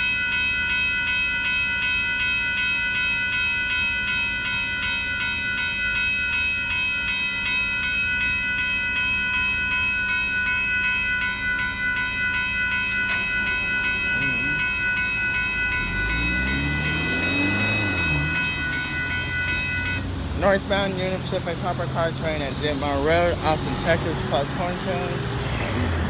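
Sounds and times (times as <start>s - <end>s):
crossing warning bell ringing: 0.0s - 26.0s
freight train rumbling: 11.3s - 26.0s.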